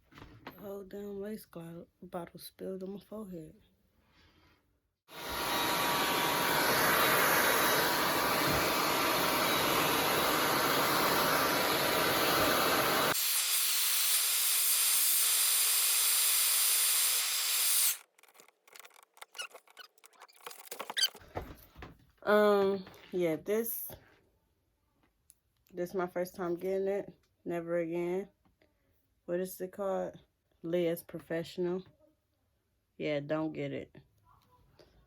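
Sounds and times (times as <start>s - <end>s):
hair dryer blowing: 5.1s - 18.1s.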